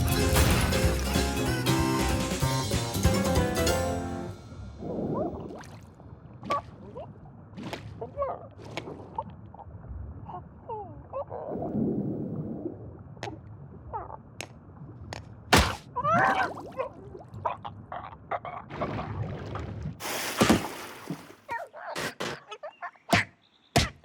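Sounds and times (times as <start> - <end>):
loud cartoon hit: 0.0 - 2.1.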